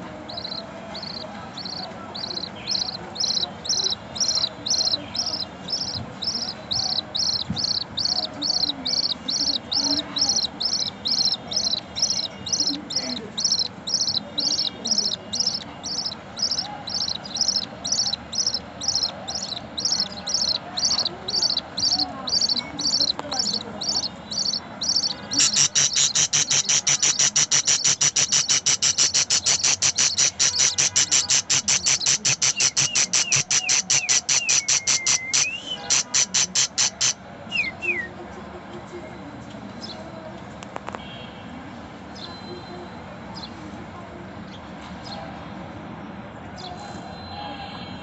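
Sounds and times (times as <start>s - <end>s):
budgerigar chick cheeping: 0.2s - 38.1s.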